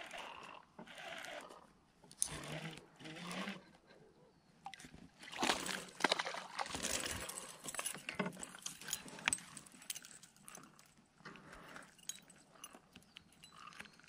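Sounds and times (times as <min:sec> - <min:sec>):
fishing gear clicking and rattling: 0:04.7 - 0:14.0.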